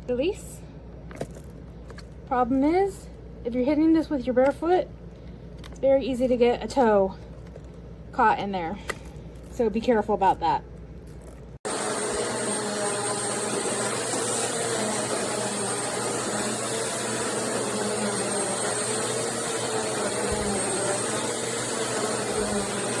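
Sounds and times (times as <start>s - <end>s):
vacuum cleaner running: 11.6s - 23.0s.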